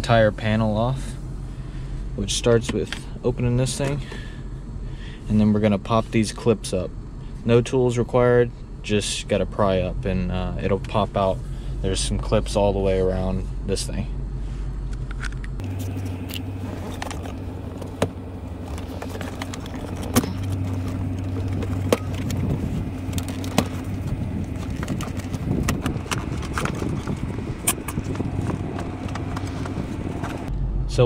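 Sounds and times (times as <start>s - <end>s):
steady low hum: 0.0s - 31.0s
light rattling: 14.9s - 30.5s.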